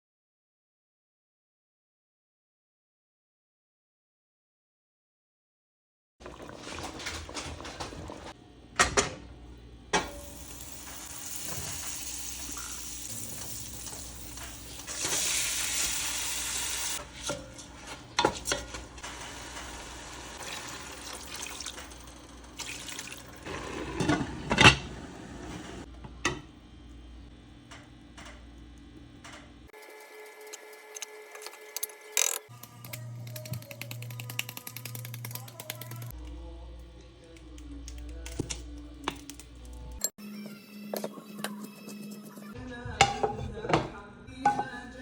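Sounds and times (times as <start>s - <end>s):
water running from tap: 10.2s - 17.0s, 19.2s - 23.5s
dishes and utensils clattering: 21.4s - 25.0s, 43.0s - 44.9s
pots knocking: 43.0s - 44.8s.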